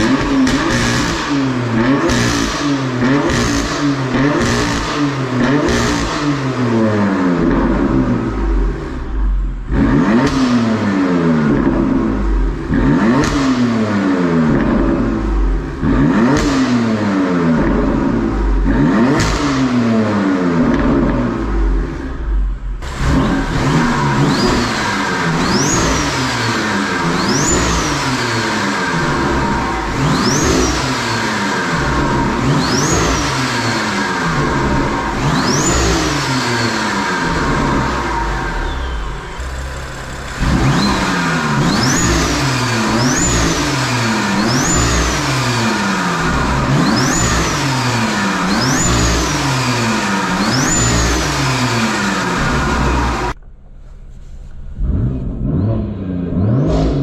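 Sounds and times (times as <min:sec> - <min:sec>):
car engine revving: 0:00.0 - 0:57.0
turbo whistle: 0:38.5 - 0:39.6.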